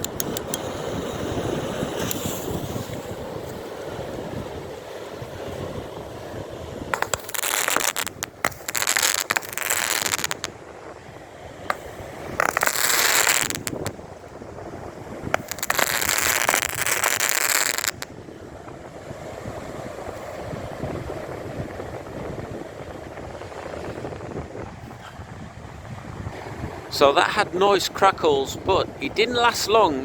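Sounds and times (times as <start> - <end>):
wind on microphone: 0.0 - 27.0
surf on beach: 0.0 - 30.0
loud hiss bursts with crackles: 7.0 - 10.5, 11.7 - 13.9, 15.4 - 18.0.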